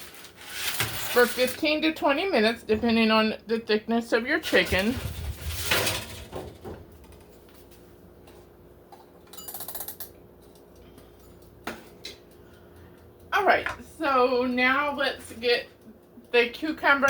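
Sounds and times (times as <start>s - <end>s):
faint steady hum: 0.0s - 17.0s
sheet pan scraping: 4.4s - 6.3s.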